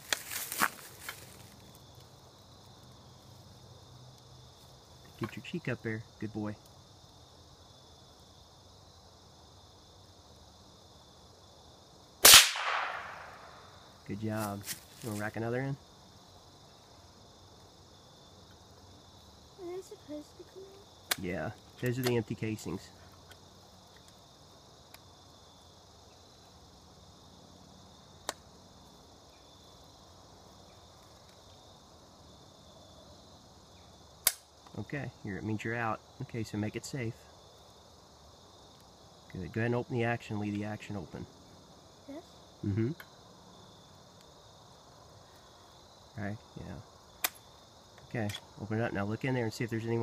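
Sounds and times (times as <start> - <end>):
insects chirring: 0.0 - 50.0
rifle shot: 12.2 - 13.6
sharp click: 34.2 - 34.5, 47.2 - 47.4.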